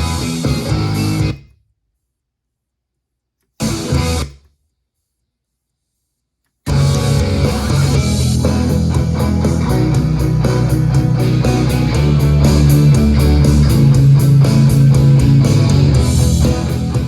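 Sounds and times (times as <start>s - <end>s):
guitar-driven rock music: 0.0s - 1.4s, 3.6s - 4.4s, 6.7s - 17.0s.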